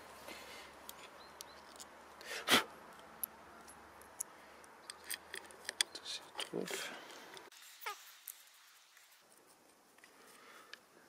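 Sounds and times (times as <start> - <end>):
metal parts clicking: 0.9 - 1.9.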